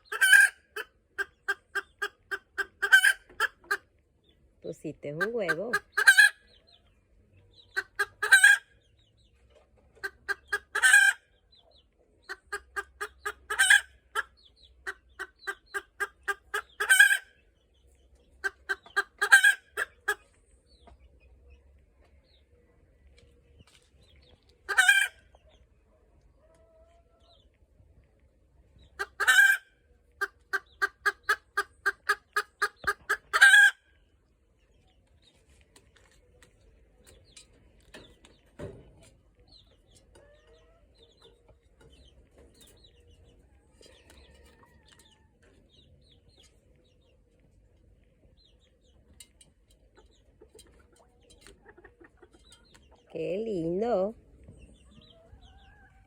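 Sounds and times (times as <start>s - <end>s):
hen cackling: 0.0s - 3.9s, 5.1s - 6.5s, 7.7s - 8.7s, 10.0s - 11.3s, 12.3s - 17.4s, 18.4s - 20.3s, 24.6s - 25.4s, 29.0s - 33.9s.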